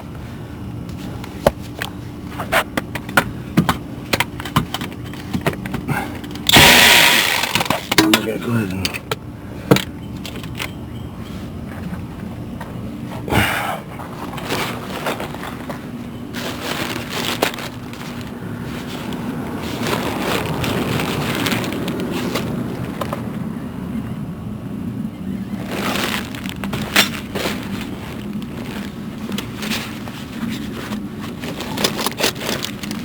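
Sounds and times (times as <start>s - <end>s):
steady low hum: 0.0s - 33.0s
hand tools clicking and knocking: 2.8s - 10.8s.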